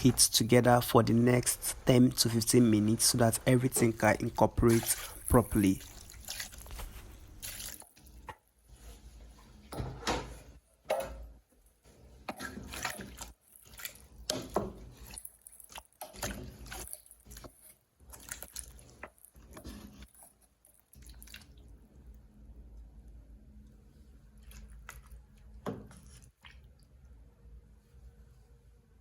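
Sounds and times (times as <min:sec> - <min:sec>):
wet clatter and splashing in pot: 0:01.6 - 0:08.5, 0:09.4 - 0:21.8.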